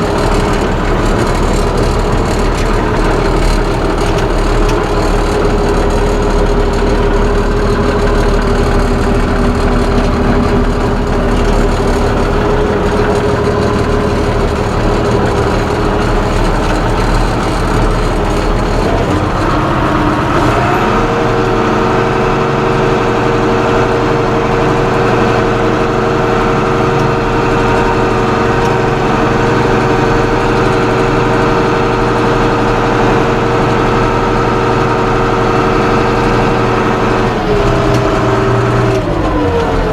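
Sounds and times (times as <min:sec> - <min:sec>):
tractor diesel engine running: 0:00.0 - 0:39.9.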